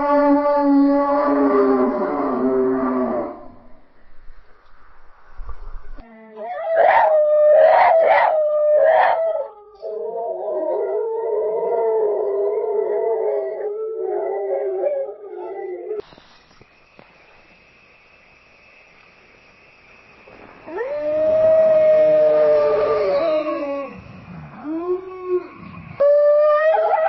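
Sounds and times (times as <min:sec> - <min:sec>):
wolves howling: 0:00.0 - 0:03.8, 0:06.4 - 0:16.0, 0:20.7 - 0:27.0
faint hiss with high tone: 0:15.5 - 0:27.0.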